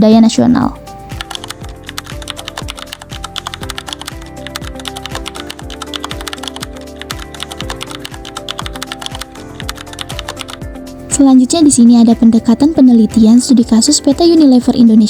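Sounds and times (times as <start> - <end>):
background music with low beat: 0.0 - 15.0
rapid keyboard typing: 1.1 - 11.4.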